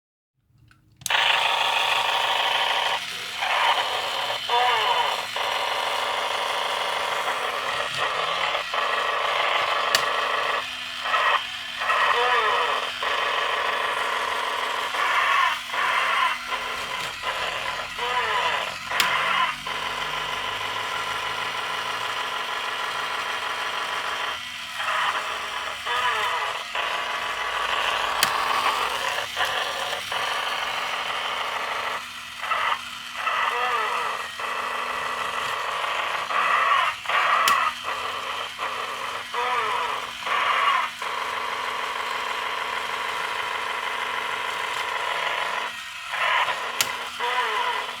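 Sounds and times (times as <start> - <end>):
toy robot electronic sounds and voice: 1.1 - 48.0.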